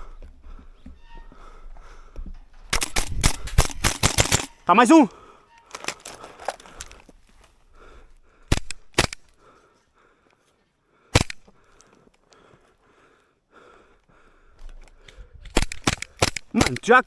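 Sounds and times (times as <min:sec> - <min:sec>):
airsoft gun shots: 0:02.7 - 0:04.6, 0:08.5 - 0:09.3, 0:11.2 - 0:11.4, 0:15.5 - 0:17.0.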